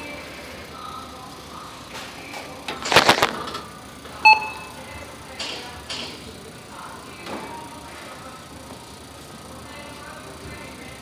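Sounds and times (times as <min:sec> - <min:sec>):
rustling: 0:02.9 - 0:03.4
barcode scanner beep: 0:04.2 - 0:04.8.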